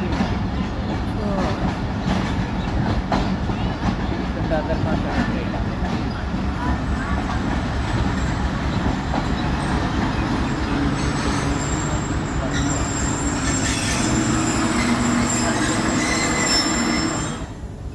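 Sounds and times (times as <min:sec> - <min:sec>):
train rumbling on rails: 0:00.0 - 0:17.9
steel wheels squealing: 0:07.8 - 0:17.6.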